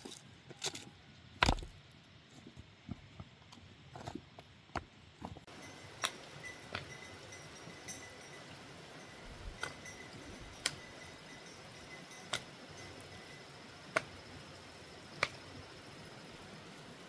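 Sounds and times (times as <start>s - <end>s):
thin high tone: 5.5s - 14.9s.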